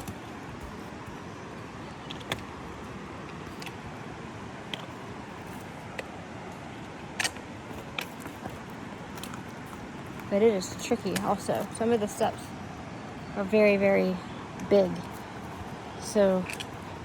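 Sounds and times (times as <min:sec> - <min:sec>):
footsteps on stone steps: 0:00.0 - 0:12.5
rushing background noise: 0:00.0 - 0:17.0.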